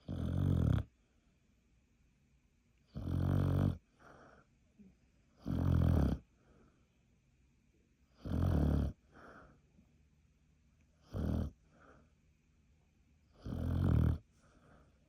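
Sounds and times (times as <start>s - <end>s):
dog snoring: 0.0s - 0.9s, 2.9s - 4.4s, 5.3s - 6.5s, 8.1s - 9.5s, 11.0s - 12.0s, 13.3s - 14.8s
soft dog breath: 3.9s - 4.6s, 9.0s - 9.9s, 14.2s - 15.0s.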